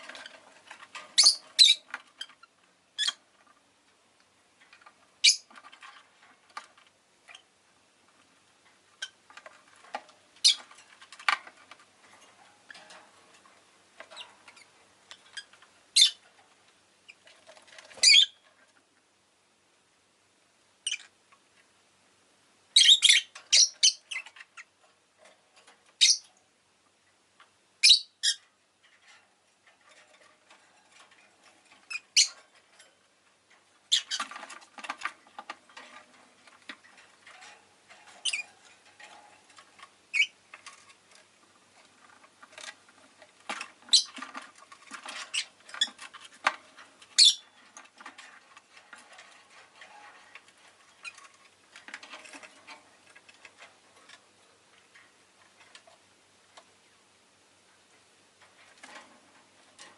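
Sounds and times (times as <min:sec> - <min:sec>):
faint clicks and scratching: 0:00.0 - 0:19.1, 0:23.3 - 0:27.6, 0:28.4 - 0:59.9
lovebird chirping: 0:01.2 - 0:01.9, 0:05.2 - 0:05.5, 0:16.0 - 0:16.2, 0:18.0 - 0:18.4, 0:22.8 - 0:24.7, 0:26.0 - 0:26.3, 0:27.8 - 0:28.4, 0:38.2 - 0:38.5, 0:40.1 - 0:40.4, 0:43.9 - 0:44.2, 0:47.2 - 0:47.5.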